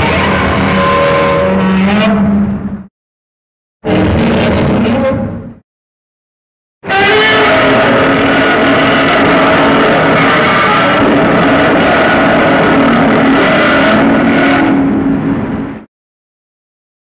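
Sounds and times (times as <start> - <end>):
loud drone of held tones: 0.0 - 2.9, 6.8 - 15.9
rough noise: 0.0 - 2.9, 3.8 - 5.6, 6.8 - 15.9.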